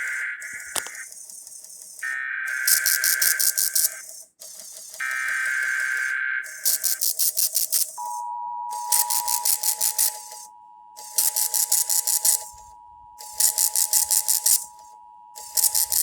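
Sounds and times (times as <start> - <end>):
high-pitched rattling static: 0.0 - 8.0, 8.9 - 16.0
two-tone alert signal: 8.0 - 16.0.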